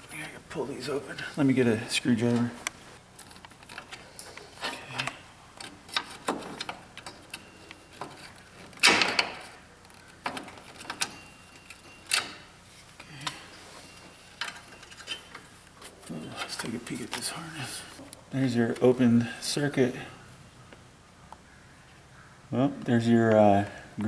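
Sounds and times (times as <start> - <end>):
hand tools clicking and knocking: 2.3 - 18.2.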